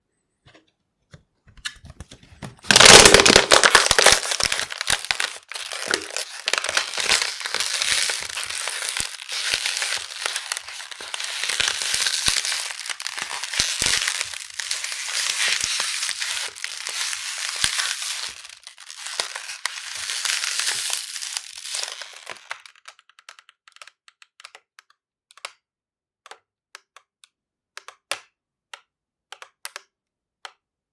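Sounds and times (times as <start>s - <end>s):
plastic bottle crinkling and cracking: 2.4s - 23.9s.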